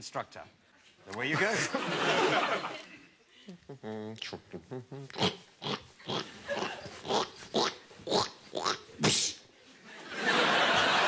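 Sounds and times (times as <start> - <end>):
audience laughing: 1.3 - 3.1, 9.8 - 11.0
mouth-made sound effects: 3.7 - 9.5.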